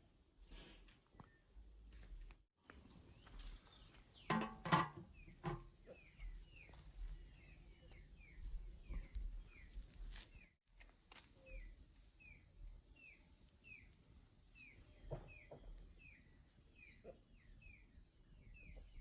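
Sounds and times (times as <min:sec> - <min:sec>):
bird chirping: 0:03.1 - 0:10.5, 0:11.4 - 0:19.0.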